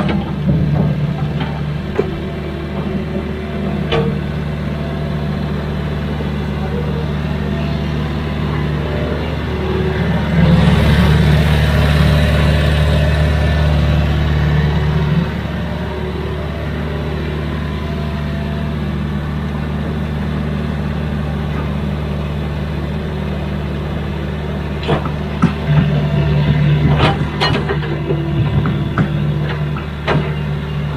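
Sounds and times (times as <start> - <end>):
excavator diesel engine running: 0.0 - 30.9.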